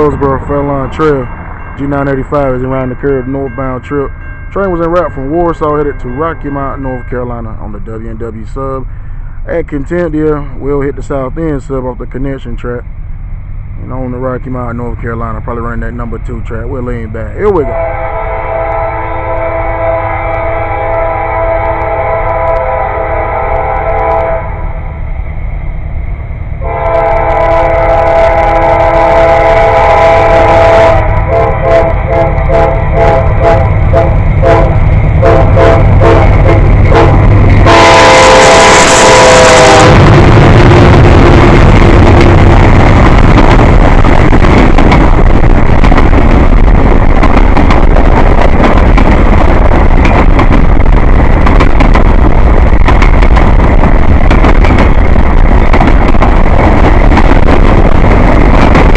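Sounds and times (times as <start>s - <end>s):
train rumbling past: 0.0s - 58.9s
locomotive air horn blasts: 17.5s - 24.8s, 26.6s - 40.2s.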